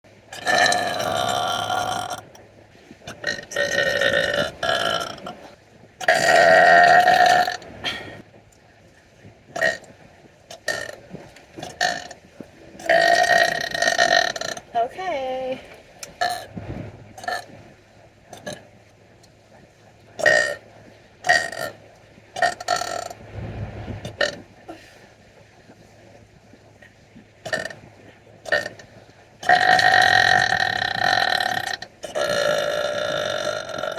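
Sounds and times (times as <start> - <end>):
person burping loudly: 0.3 - 2.2, 3.3 - 5.3, 6.0 - 8.2, 29.4 - 33.9.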